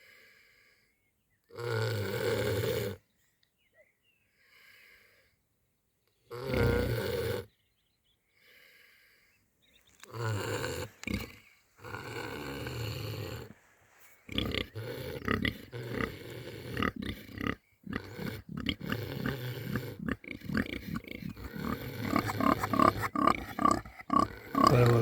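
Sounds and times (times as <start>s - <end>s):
animals snoring and grunting: 1.5s - 3.0s, 6.3s - 7.5s, 10.0s - 25.0s.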